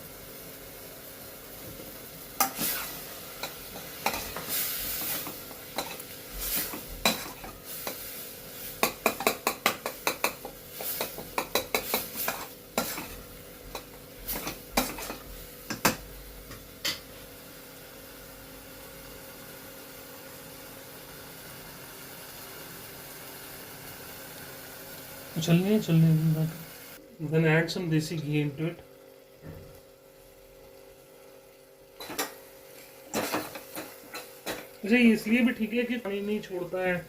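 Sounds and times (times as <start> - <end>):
steady background hiss: 0.0 - 37.0
spoon stirring and scraping pan: 2.4 - 17.0, 32.0 - 34.8.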